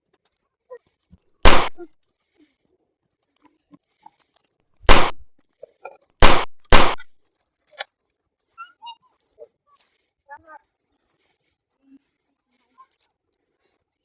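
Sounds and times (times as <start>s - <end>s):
sharp shot-like bangs: 1.5s - 1.8s, 4.9s - 5.3s, 6.2s - 7.1s.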